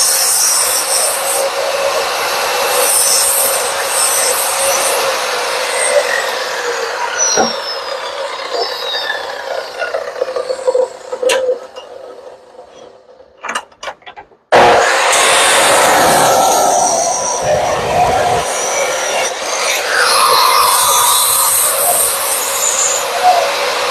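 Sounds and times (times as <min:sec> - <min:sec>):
loud steady noise: 0:00.0 - 0:09.6, 0:14.5 - 0:23.9
chop saw spinning down: 0:00.0 - 0:10.4, 0:14.5 - 0:23.9.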